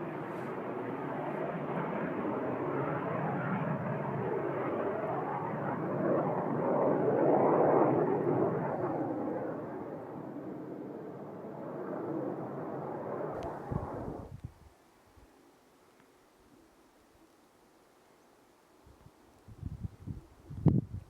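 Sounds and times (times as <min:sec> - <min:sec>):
jet aircraft passing overhead: 0:00.0 - 0:14.3.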